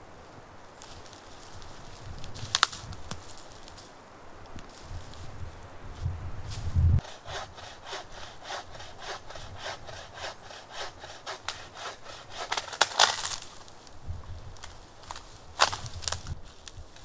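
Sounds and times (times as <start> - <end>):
hand saw cutting wood: 7.0 - 13.4.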